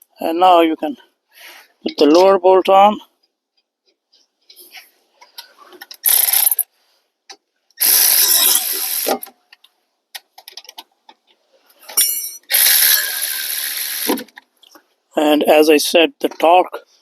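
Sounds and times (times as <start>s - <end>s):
ratchet wrench clicking: 6.0s - 6.6s, 7.8s - 9.2s, 12.0s - 14.3s.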